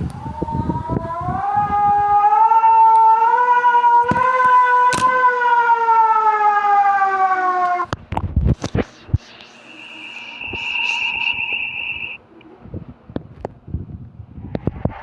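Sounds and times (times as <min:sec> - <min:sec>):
siren wailing: 0:00.0 - 0:08.0, 0:09.6 - 0:12.2.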